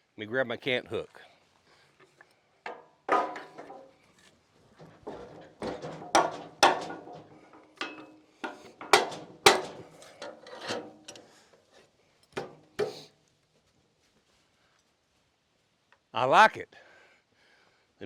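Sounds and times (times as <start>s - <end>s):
wood and metal knocking: 2.7s - 3.9s, 4.8s - 11.3s, 12.4s - 13.1s.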